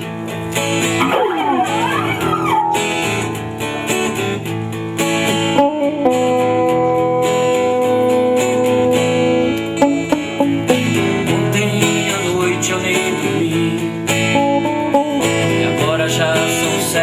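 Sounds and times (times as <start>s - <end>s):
rock band instrumental: 0.0s - 12.2s
strummed guitars: 0.0s - 17.0s.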